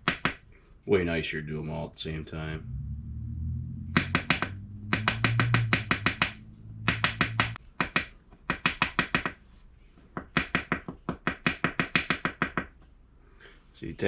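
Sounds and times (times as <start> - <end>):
low hum: 2.0 - 7.6.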